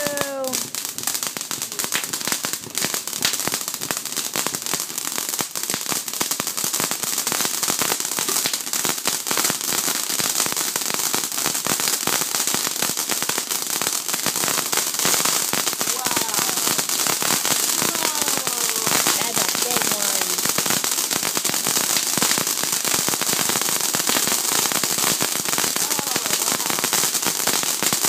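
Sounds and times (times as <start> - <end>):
firework crackling: 0.0 - 28.0
firework hissing: 12.8 - 28.0.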